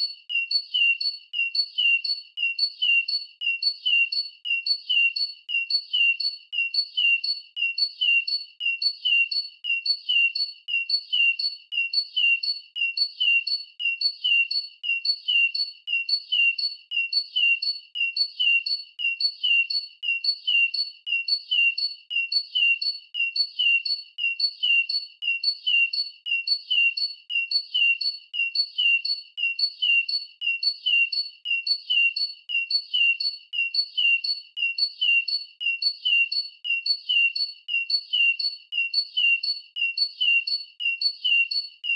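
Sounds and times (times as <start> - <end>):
repeated high bird chirp: 28.7 - 41.9.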